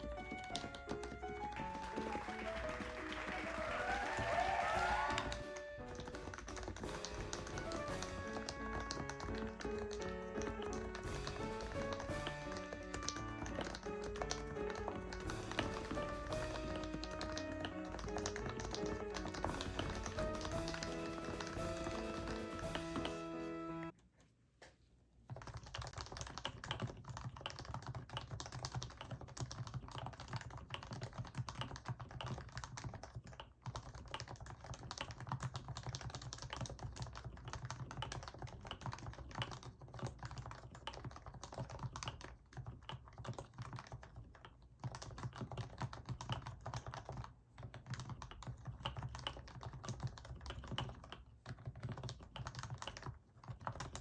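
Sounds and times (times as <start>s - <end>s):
fast keyboard typing: 0.0s - 24.0s, 25.2s - 54.0s.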